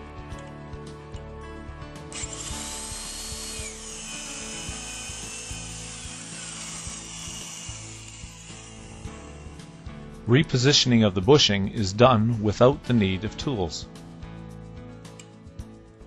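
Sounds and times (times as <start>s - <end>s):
electric drill boring into wood: 2.1s - 9.9s.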